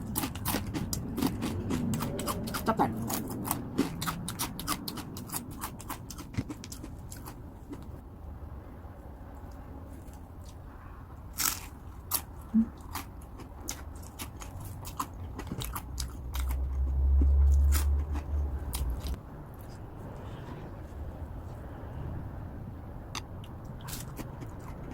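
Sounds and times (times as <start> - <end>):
crunching and chewing snack: 0.0 - 8.0, 11.2 - 19.8, 23.1 - 24.9
low rumble: 15.5 - 23.1.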